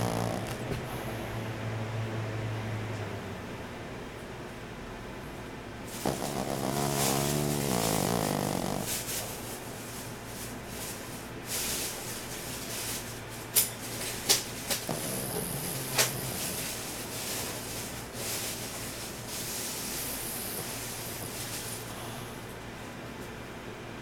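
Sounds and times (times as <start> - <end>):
dog snoring: 0.0 - 2.2, 5.9 - 9.7, 14.1 - 22.6
steady low hum: 0.0 - 24.0.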